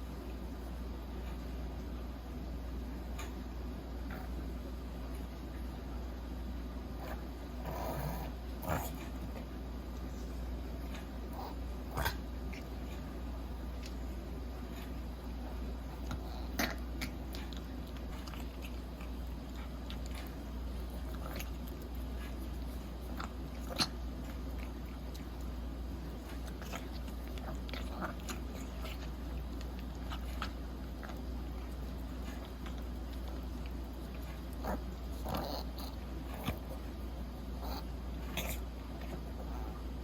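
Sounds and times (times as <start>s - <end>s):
dog chewing with crunchy clicks: 7.0s - 40.0s.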